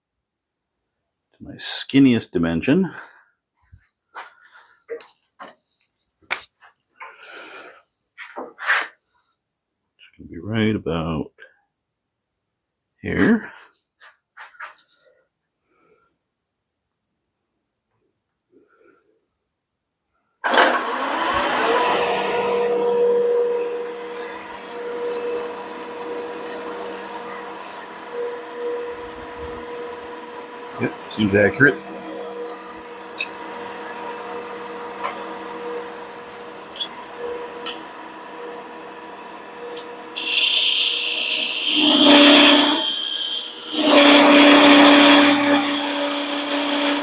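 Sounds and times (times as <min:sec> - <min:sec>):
turning tool shaving wood: 0:20.4 - 0:47.0
wood lathe motor whining: 0:20.4 - 0:47.0.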